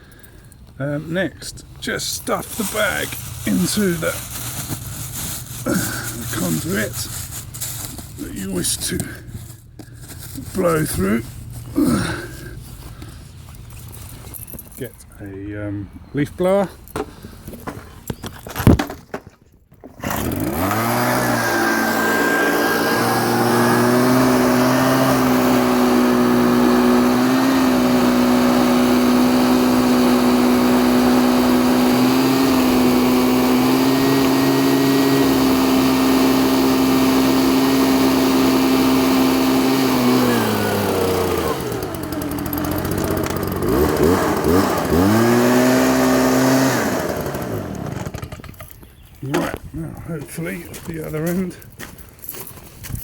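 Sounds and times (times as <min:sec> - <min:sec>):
leaf blower running: 0:02.0 - 0:13.2, 0:19.8 - 0:48.8.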